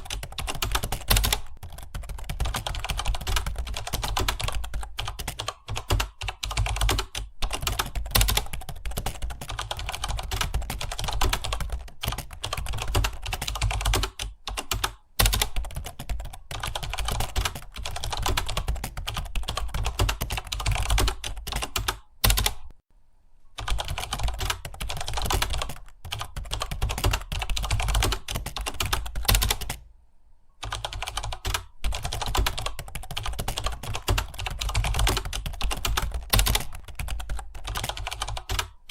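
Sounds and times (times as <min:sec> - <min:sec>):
typing on computer keyboard: 0:00.0 - 0:22.7, 0:23.6 - 0:29.8, 0:30.6 - 0:38.9.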